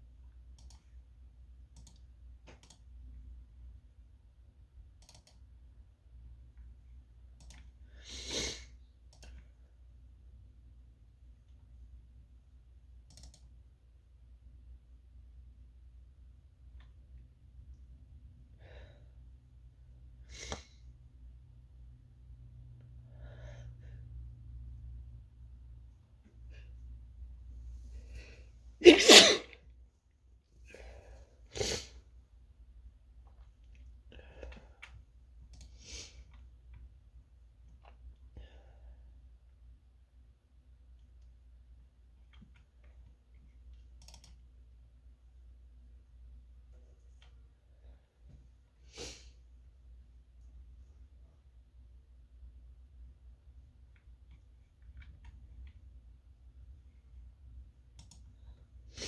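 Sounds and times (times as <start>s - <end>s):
computer mouse clicking: 0.5s - 1.0s, 1.7s - 3.0s, 4.9s - 5.5s, 7.4s - 7.8s, 9.1s - 9.4s, 13.0s - 13.6s, 34.8s - 36.8s, 42.3s - 44.5s, 57.9s - 58.4s
person sneezing: 8.0s - 8.7s, 28.8s - 29.6s, 31.5s - 32.0s
breathy sniff: 48.8s - 49.4s.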